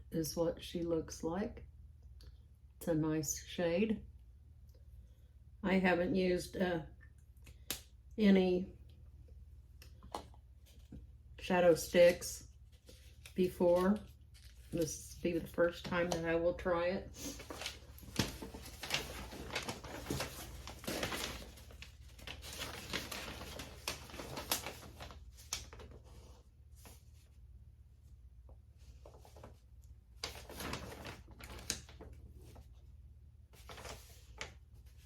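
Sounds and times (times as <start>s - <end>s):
packaging rustling: 17.2s - 27.0s, 30.2s - 32.7s.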